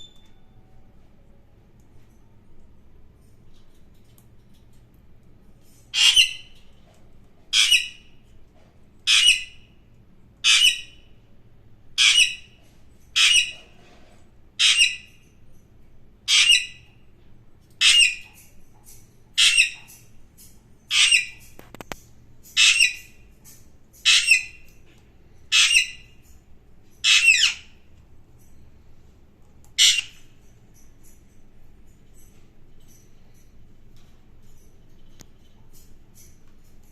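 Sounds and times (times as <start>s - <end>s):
parakeet screeching: 6.0s - 6.5s, 7.6s - 8.0s, 9.1s - 9.6s, 10.4s - 11.0s, 12.0s - 12.5s, 13.2s - 13.6s, 14.6s - 15.1s, 16.3s - 16.8s, 17.8s - 18.4s, 19.4s - 20.0s, 20.9s - 21.4s, 22.6s - 23.1s, 24.0s - 24.6s, 25.5s - 26.1s, 27.0s - 27.7s, 29.8s - 30.2s.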